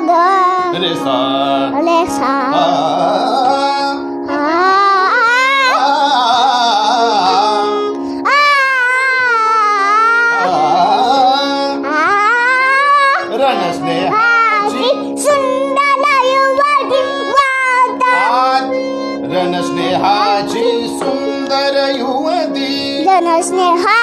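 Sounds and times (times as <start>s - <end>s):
instrumental drone: 0.0s - 24.0s
person singing wordless vowels: 0.0s - 24.0s.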